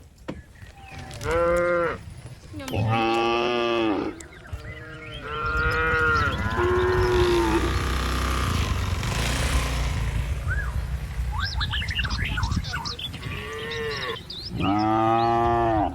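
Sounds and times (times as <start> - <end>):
cattle mooing: 2.7 - 8.6, 13.2 - 15.9.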